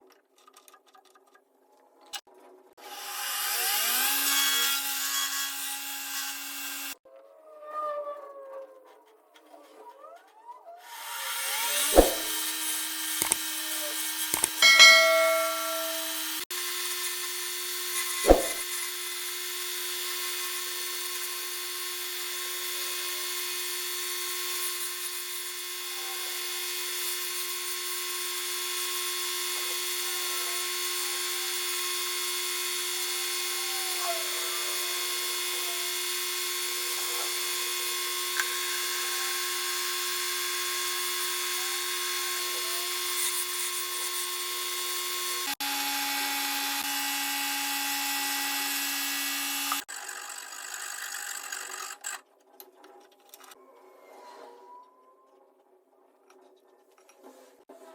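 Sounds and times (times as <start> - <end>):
sharp knock: 12.0 - 12.3, 14.6 - 16.1, 18.3 - 18.6
wood lathe motor whine: 28.1 - 49.9.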